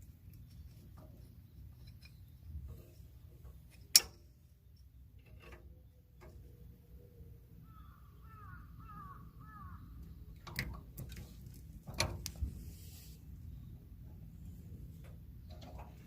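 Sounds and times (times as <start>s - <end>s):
bird calling: 6.9s - 10.4s.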